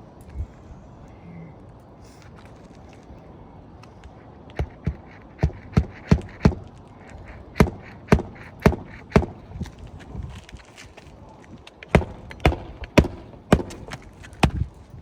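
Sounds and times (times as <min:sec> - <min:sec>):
hammer knocking on roof shingles: 0:04.6 - 0:09.8, 0:11.9 - 0:14.8.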